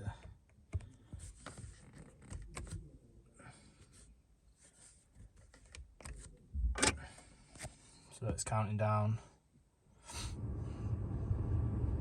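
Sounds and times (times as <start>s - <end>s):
fingers rustling on controls: 0.7s - 2.8s.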